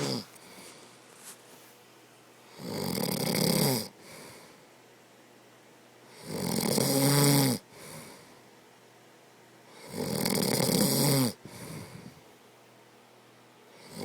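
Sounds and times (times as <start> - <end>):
man snoring: 0.0 - 0.4, 2.5 - 4.0, 6.2 - 7.6, 9.8 - 11.8, 13.8 - 14.0
soft breath: 0.0 - 1.9, 4.0 - 4.7, 11.4 - 12.4.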